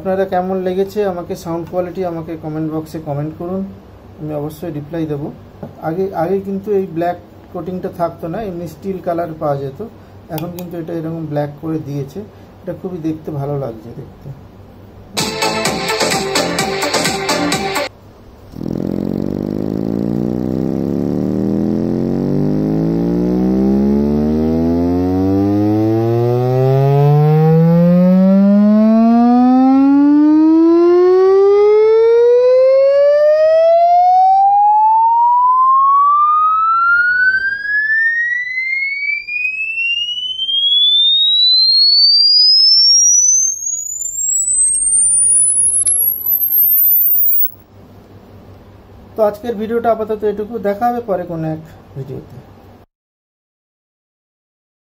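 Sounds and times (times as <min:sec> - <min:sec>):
rising sine-wave sweep tone: 0:19.1 - 0:47.6.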